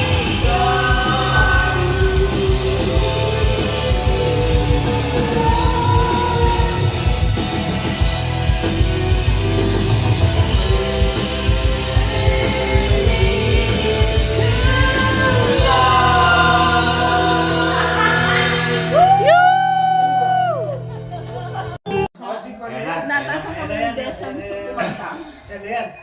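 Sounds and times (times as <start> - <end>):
loud rock music with singing: 0.0 - 19.6.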